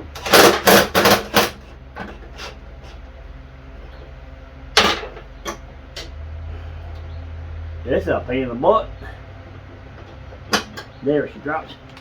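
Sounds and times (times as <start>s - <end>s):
low steady hum: 0.0s - 12.0s
metal parts clanking: 0.2s - 2.2s.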